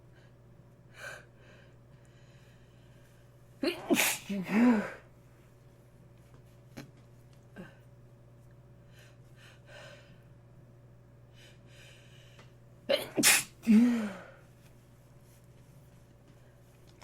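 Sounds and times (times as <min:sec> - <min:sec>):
person sneezing loudly: 0:03.6 - 0:05.0, 0:12.9 - 0:14.4.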